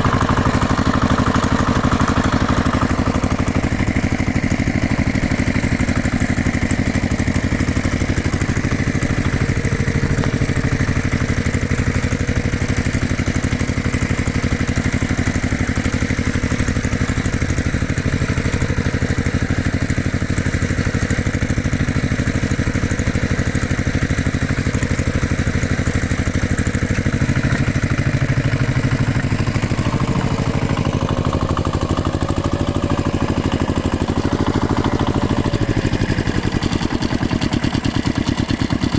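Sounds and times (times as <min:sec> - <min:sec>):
heavy machine engine running: 0:00.0 - 0:38.9.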